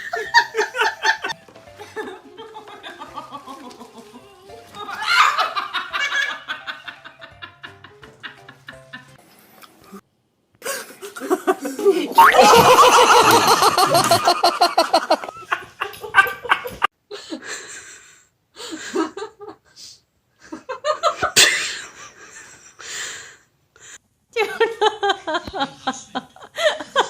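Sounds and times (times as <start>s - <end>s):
person laughing hard: 0.0s - 9.2s, 10.7s - 16.9s.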